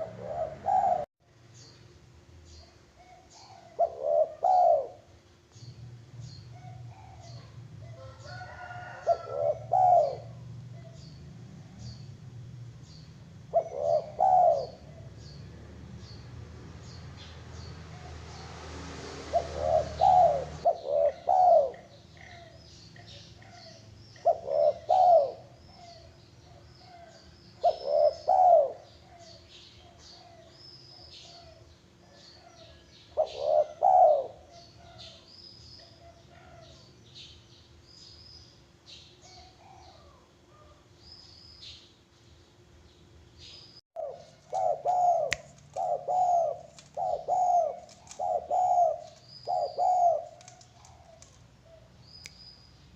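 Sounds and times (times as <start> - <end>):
dove cooing: 0.0 - 1.1, 2.9 - 5.2, 6.5 - 11.9, 13.5 - 15.5, 19.2 - 36.9, 39.3 - 40.8, 44.0 - 52.0.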